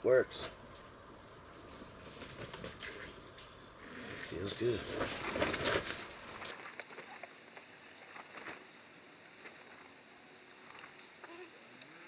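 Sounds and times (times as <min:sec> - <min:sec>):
metal parts clicking and tapping: 0:05.2 - 0:12.0.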